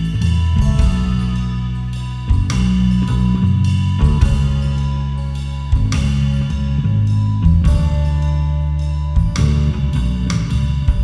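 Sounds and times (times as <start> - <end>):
rock music with guitar: 0.0 - 11.0
drum hit: 0.5 - 1.7, 2.3 - 5.0, 7.4 - 8.2.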